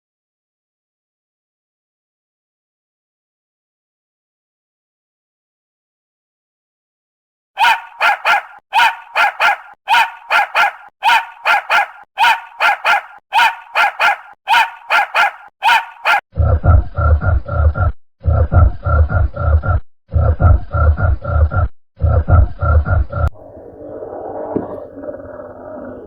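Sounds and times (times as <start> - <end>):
dog barking: 7.6 - 16.2
deep pulsing animal grunting: 16.4 - 26.0.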